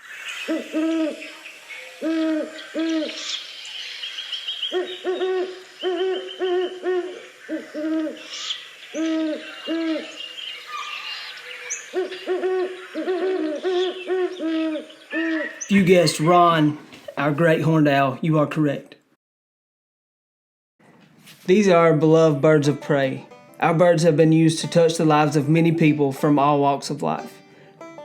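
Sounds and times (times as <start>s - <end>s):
owl hooting: 0.0s - 16.7s.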